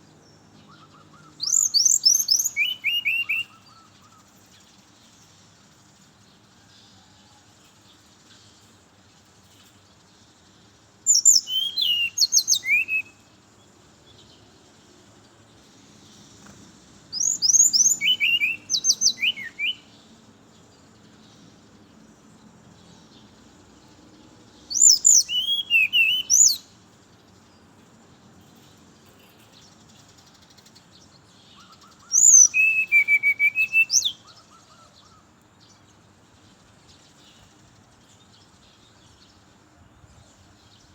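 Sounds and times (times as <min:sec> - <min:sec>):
bird singing high whistled notes: 0:00.6 - 0:04.5, 0:11.0 - 0:13.4, 0:17.1 - 0:20.0, 0:24.6 - 0:26.9, 0:30.4 - 0:35.3.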